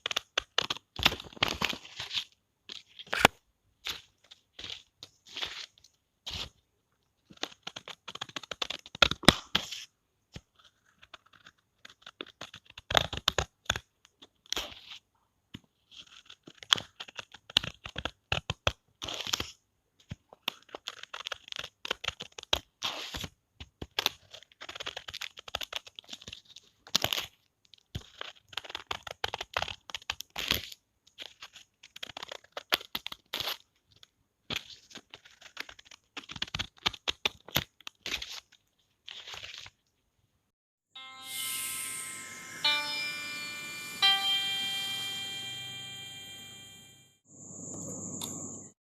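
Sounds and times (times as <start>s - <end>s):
scissors snipping paper: 7.2s - 15.0s, 23.8s - 26.3s, 28.0s - 33.6s, 34.5s - 38.6s
paper rustling: 28.0s - 39.8s.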